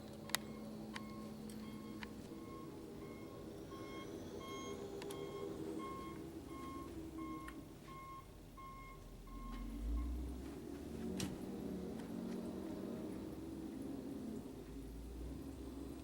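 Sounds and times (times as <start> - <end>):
low engine rumble: 0.0 - 16.0
backup alarm beeping: 0.2 - 10.2.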